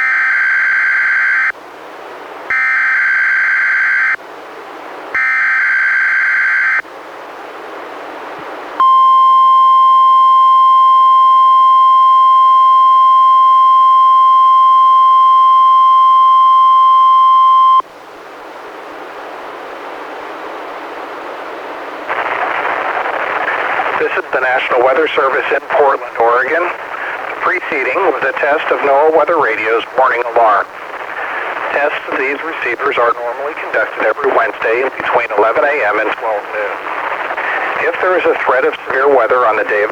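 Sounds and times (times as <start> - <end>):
steady warning alarm tone: 2.5 - 4.2, 5.2 - 6.8, 8.8 - 17.8
radio hiss: 22.1 - 39.9.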